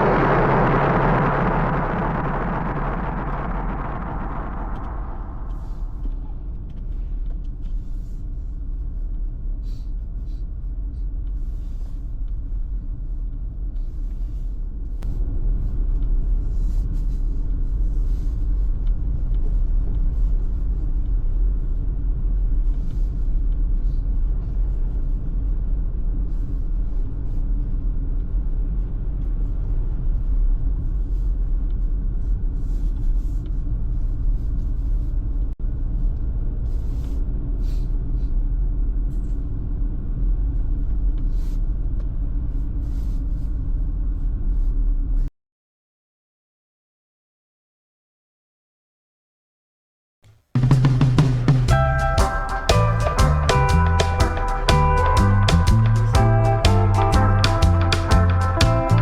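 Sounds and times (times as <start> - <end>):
car engine and tyre rumble: 0.0 - 45.2.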